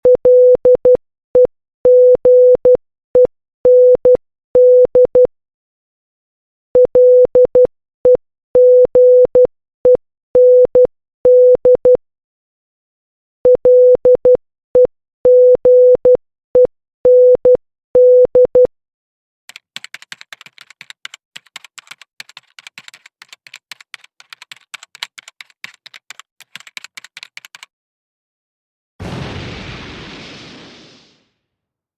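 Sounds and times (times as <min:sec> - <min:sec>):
fast typing clicks: 0:19.5 - 0:27.7.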